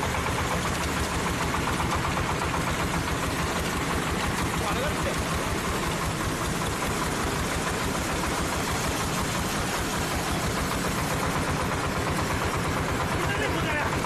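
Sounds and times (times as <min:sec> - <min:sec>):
farm vehicle engine chugging: 0:00.0 - 0:14.0.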